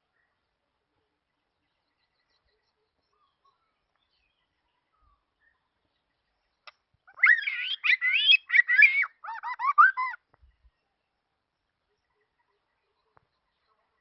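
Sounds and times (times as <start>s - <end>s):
songbird warbling: 6.6s - 10.2s.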